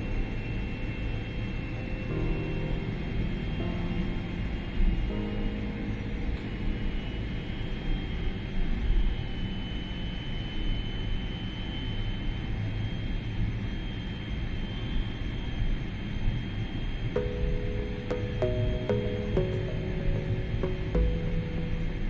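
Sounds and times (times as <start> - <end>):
faint high whine: 0.0 - 22.0
jet engines and airflow rumble: 0.0 - 22.0
music notes: 17.2 - 22.0.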